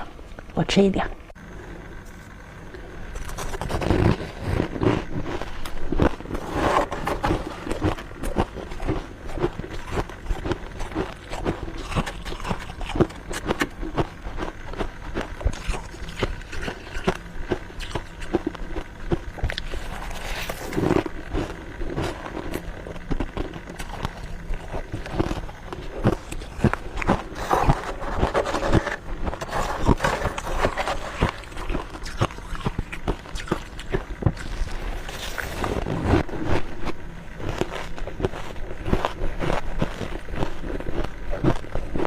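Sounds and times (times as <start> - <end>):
chewing and crunching frost: 1.5 - 42.0.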